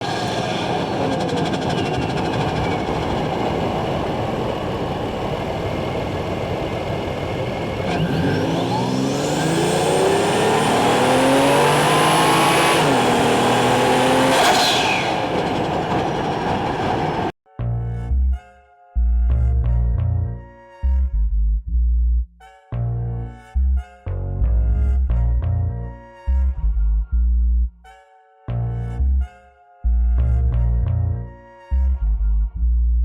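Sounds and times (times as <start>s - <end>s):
car engine accelerating: 0.0s - 17.3s
high turbo whistle: 0.0s - 17.3s.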